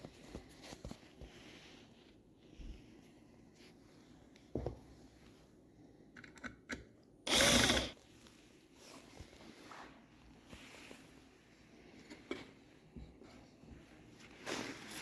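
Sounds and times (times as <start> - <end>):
power drill burst: 7.3 - 8.0.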